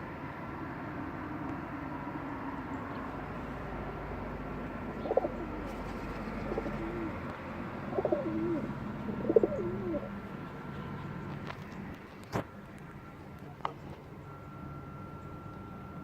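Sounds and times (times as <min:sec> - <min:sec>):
bird calling: 0:04.9 - 0:07.3, 0:07.9 - 0:11.2.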